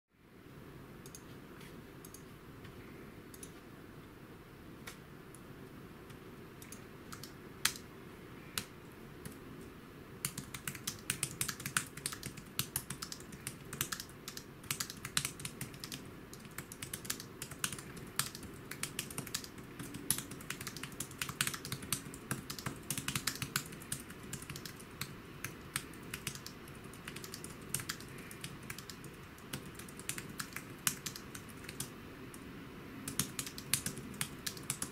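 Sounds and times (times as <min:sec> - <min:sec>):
keyboard typing: 0:01.0 - 0:01.3, 0:02.0 - 0:02.3, 0:03.3 - 0:03.6, 0:06.6 - 0:09.4, 0:10.2 - 0:32.4, 0:33.1 - 0:34.9.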